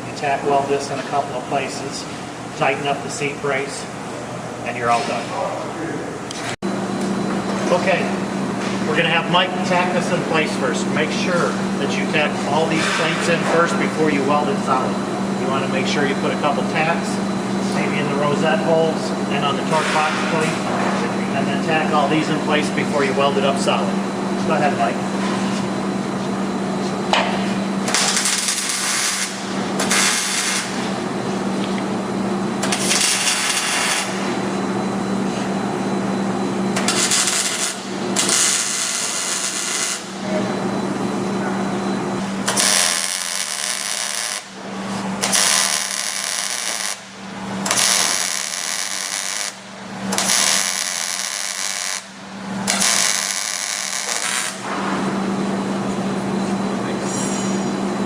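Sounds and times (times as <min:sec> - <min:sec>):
steady low hum: 0:00.0 - 0:58.0
welding arc crackling: 0:27.8 - 0:30.8, 0:32.6 - 0:34.2, 0:36.8 - 0:40.2, 0:42.4 - 0:44.6, 0:45.2 - 0:54.7.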